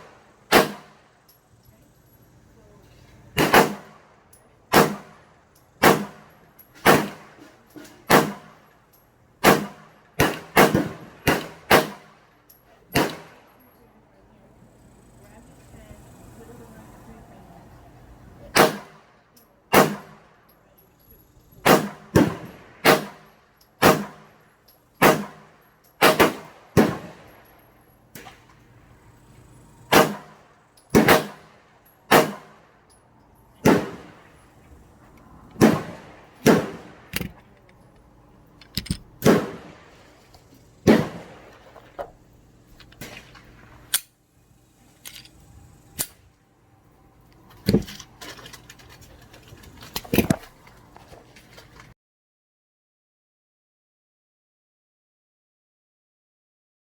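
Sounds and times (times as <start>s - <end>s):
gunshots with echo: 0.0s - 1.0s, 3.4s - 4.0s, 5.8s - 7.4s, 8.1s - 8.6s, 9.4s - 12.2s, 21.6s - 24.3s, 25.0s - 27.3s, 29.9s - 32.6s, 33.6s - 34.3s, 35.6s - 37.1s, 39.2s - 39.9s, 40.8s - 41.6s.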